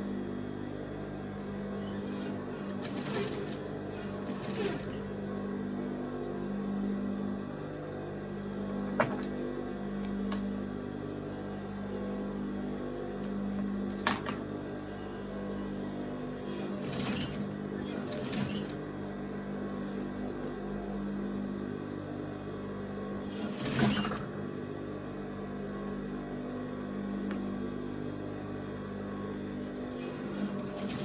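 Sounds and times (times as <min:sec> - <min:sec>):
sewing machine running: 0:01.8 - 0:05.1, 0:16.4 - 0:18.8, 0:23.3 - 0:24.3, 0:30.0 - 0:31.0.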